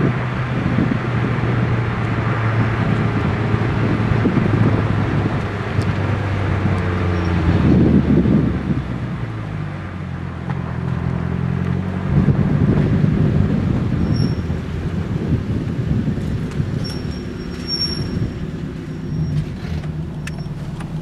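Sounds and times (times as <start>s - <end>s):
car engine and exhaust: 0.0s - 21.0s
wind rumbling on microphone: 0.0s - 21.0s.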